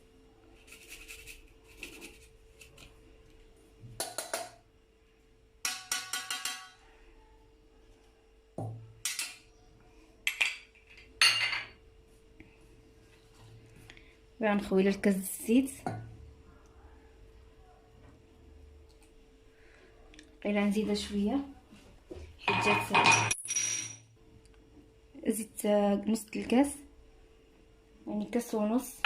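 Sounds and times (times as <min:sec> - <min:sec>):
utensils and dishes clattering: 0:22.4 - 0:24.0.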